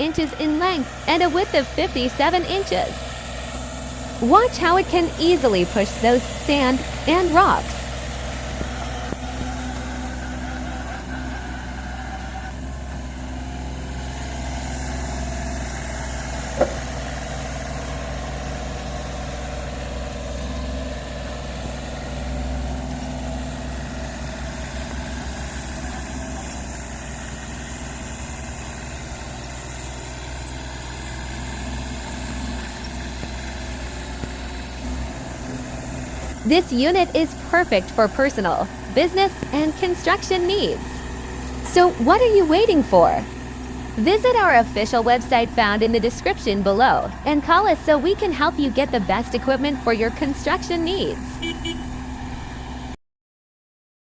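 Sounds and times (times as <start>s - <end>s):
diesel excavator engine running: 0.0s - 53.0s.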